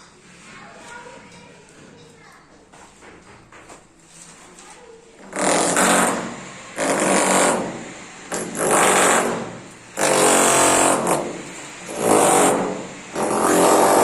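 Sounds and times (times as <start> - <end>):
power drill bursts: 5.2 - 14.0.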